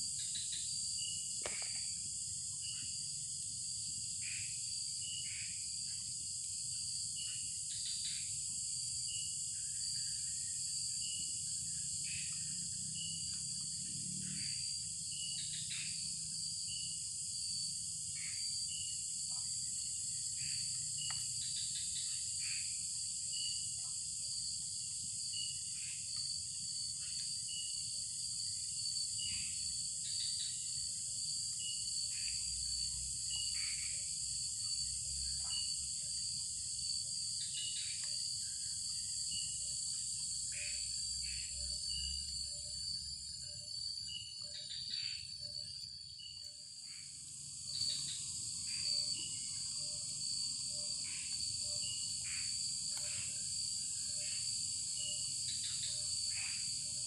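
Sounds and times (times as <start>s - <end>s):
crickets droning: 0.0s - 57.0s
short insect chirps: 0.2s - 3.3s, 24.9s - 57.0s.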